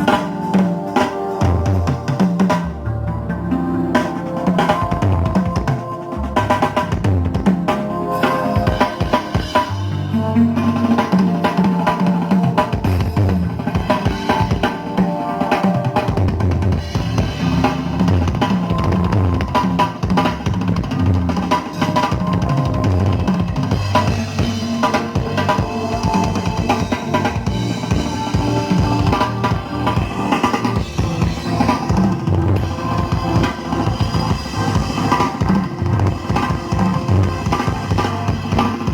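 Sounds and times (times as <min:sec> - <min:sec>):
loud drum-heavy music with bass: 0:00.0 - 0:38.9.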